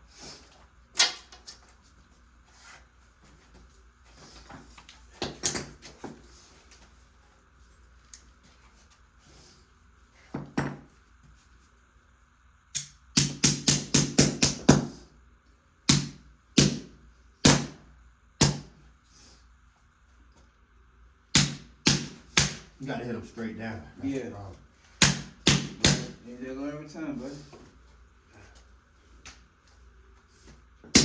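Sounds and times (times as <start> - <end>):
hammer striking tacks: 12.8 - 14.8, 21.4 - 22.7, 25.0 - 26.2.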